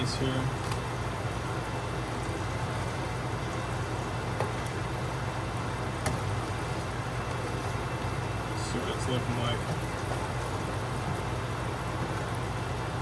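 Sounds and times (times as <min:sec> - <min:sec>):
low mechanical hum: 0:00.0 - 0:13.0.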